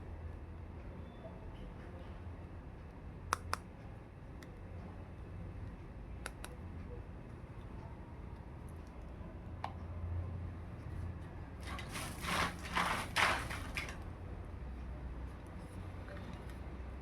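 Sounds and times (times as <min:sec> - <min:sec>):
packaging rustling scrapes: 0:11.7 - 0:13.9.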